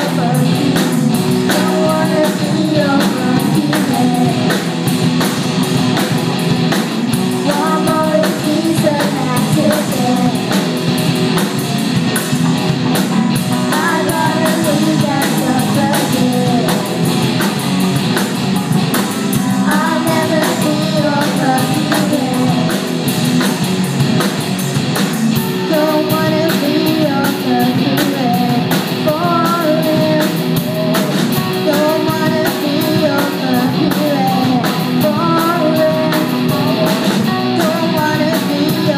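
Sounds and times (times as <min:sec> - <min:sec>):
person singing: 0:00.0 - 0:04.7, 0:07.3 - 0:10.7, 0:13.2 - 0:17.2, 0:19.0 - 0:23.0, 0:25.4 - 0:38.9
drum kit beat: 0:00.0 - 0:38.9
rock band playing: 0:00.0 - 0:38.9.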